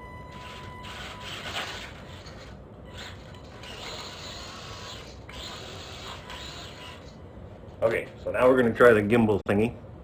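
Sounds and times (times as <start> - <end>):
toy truck motor whirring: 0.4 - 7.2.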